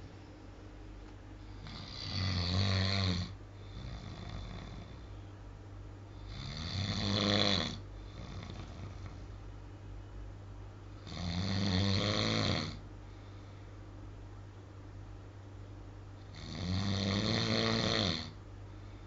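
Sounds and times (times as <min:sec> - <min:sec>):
quiet breathing: 0:01.3 - 0:06.7, 0:07.7 - 0:09.8, 0:12.8 - 0:14.0, 0:18.2 - 0:19.0
man snoring loudly: 0:01.6 - 0:05.0, 0:06.2 - 0:09.2, 0:11.0 - 0:12.8, 0:16.3 - 0:18.4.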